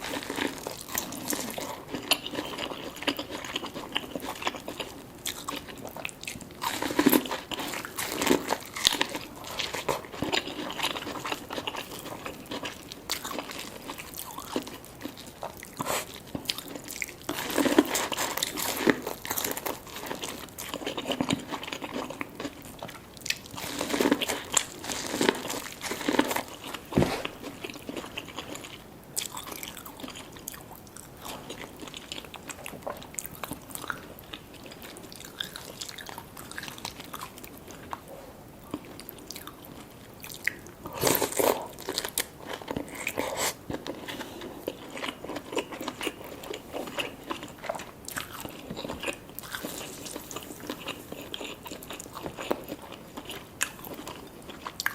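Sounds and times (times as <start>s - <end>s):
crunchy bites and chewing: 0.0s - 38.0s, 38.7s - 54.9s.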